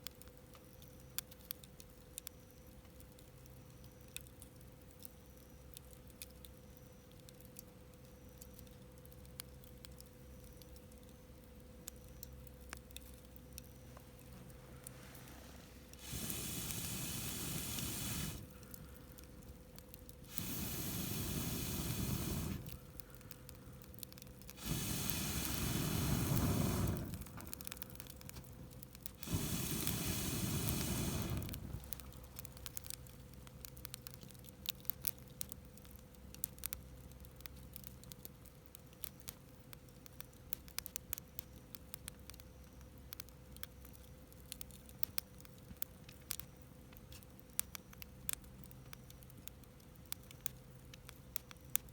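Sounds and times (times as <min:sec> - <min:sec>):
campfire crackling and popping: 0:00.0 - 0:51.9
air blown through pipe whooshing: 0:24.6 - 0:27.6, 0:29.2 - 0:31.9.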